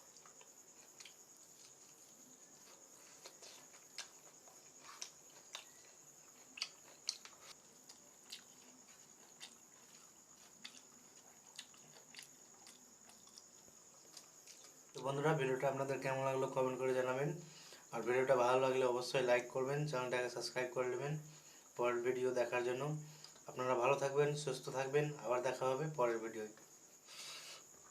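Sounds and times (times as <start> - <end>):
high insect trill: 0.0 - 27.9
mouth clicks of eating: 3.3 - 8.6.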